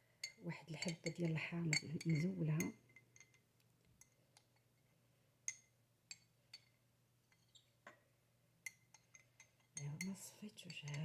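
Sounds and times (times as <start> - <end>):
utensil clinking against glass: 8.7 - 11.0.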